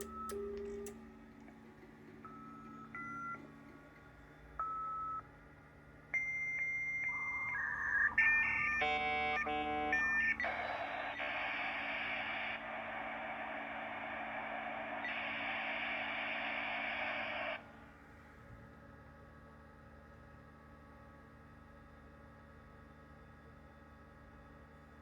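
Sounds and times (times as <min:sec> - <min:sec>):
warbling modem tones: 0:06.8 - 0:17.6
modem training hiss: 0:07.1 - 0:17.7.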